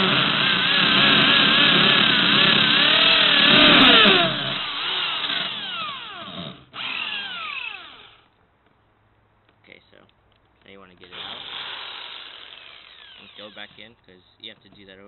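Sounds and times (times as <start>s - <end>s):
power drill whining: 0.0s - 8.3s, 11.1s - 13.9s.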